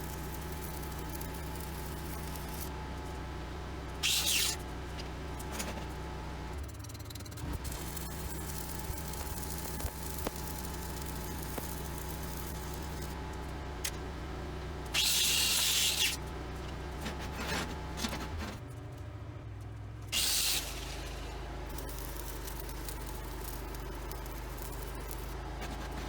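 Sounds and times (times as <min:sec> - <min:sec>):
low machine hum: 0:00.0 - 0:15.0
loud bursts of hiss: 0:04.0 - 0:04.6, 0:15.0 - 0:16.2, 0:20.2 - 0:23.3.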